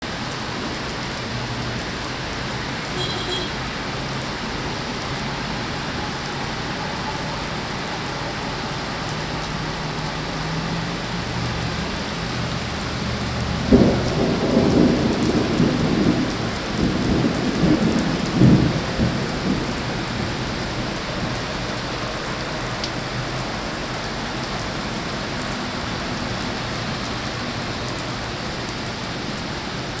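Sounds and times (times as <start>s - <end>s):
steady rain falling: 0.0s - 30.0s
rumbling thunder: 12.4s - 22.7s.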